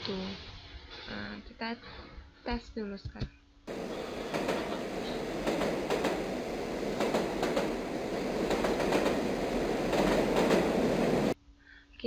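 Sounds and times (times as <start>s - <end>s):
running train noise: 3.7s - 11.4s.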